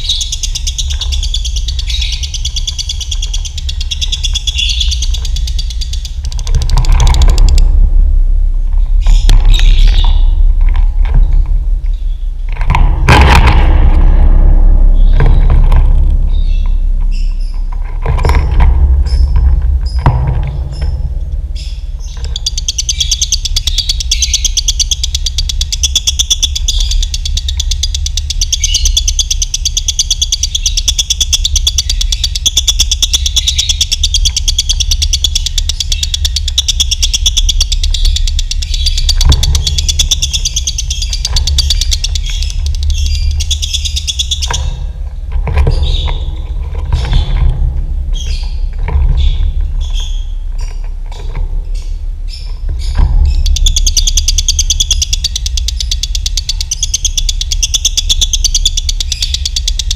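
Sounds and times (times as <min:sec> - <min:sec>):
lovebird chattering trill: 0:00.0 - 0:07.6, 0:21.6 - 0:44.8, 0:51.8 - 0:59.9
steady low hum: 0:00.0 - 0:59.9.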